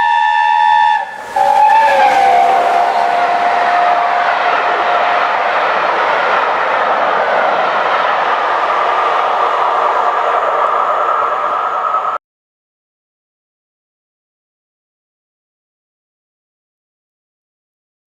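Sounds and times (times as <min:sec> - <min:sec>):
steam locomotive whistle: 0:00.0 - 0:06.4
steam train passing: 0:00.0 - 0:12.2.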